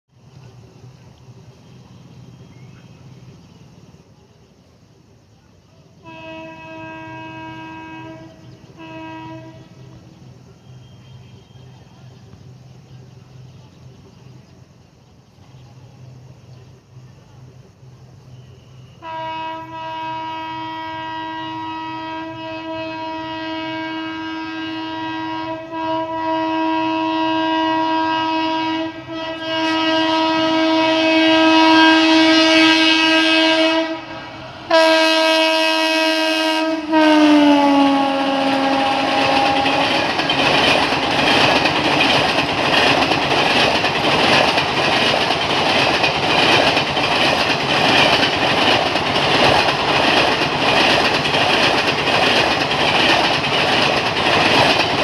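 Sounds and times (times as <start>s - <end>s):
train horn blast: 6.0s - 12.1s, 18.3s - 42.2s
wheels clattering over track: 38.5s - 55.0s.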